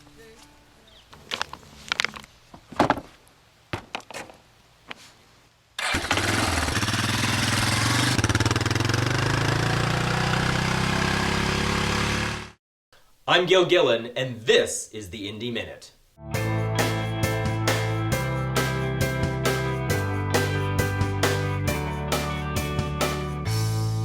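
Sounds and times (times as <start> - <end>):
engine running loudly: 6.0 - 12.6.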